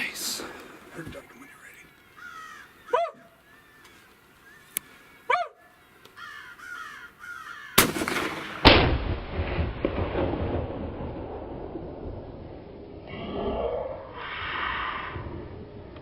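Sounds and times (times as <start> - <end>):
rifle shot echoing: 7.7 - 12.6
predator call yelping: 13.1 - 15.6.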